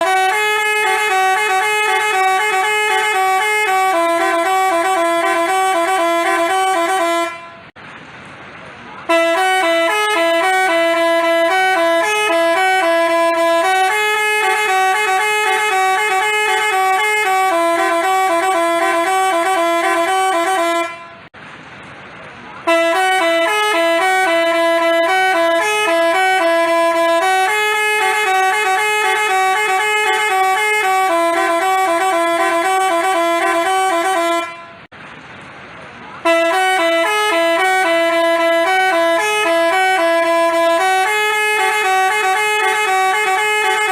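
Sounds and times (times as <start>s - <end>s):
musical bus horn tune: 0.0s - 7.8s, 9.0s - 21.4s, 22.6s - 34.9s, 36.2s - 43.9s.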